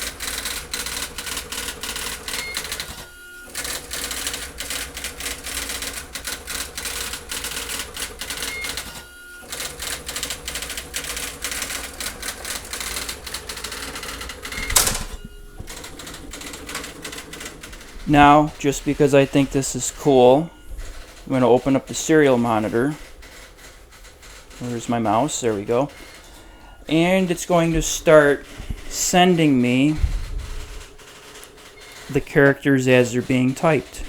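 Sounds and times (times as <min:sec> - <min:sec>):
typewriter rattling character strikes: 0:00.0 - 0:08.9, 0:09.5 - 0:26.3, 0:26.9 - 0:34.0.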